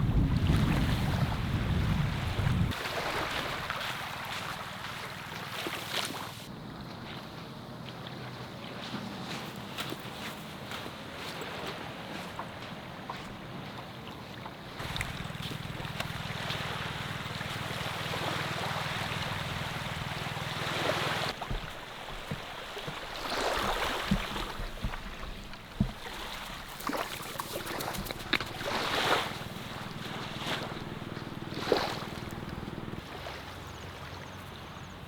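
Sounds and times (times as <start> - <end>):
sea waves washing ashore: 0.0 - 35.0
low steady hum: 24.8 - 33.0.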